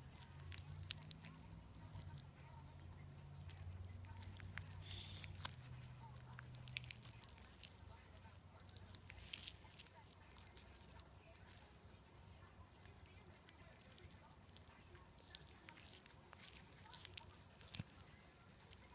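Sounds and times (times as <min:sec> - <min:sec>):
slime clicks and crackles: 0:00.0 - 0:18.9.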